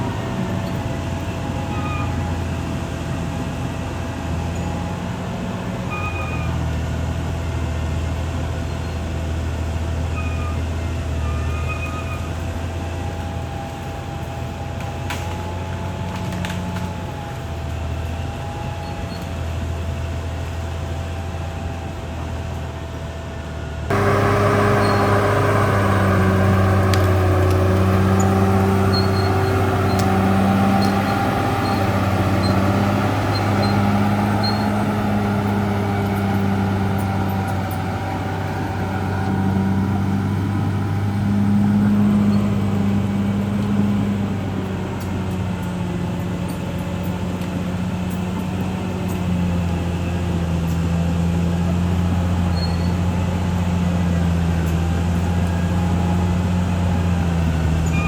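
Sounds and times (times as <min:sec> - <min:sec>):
bulldozer diesel engine droning: 0:00.0 - 0:58.0.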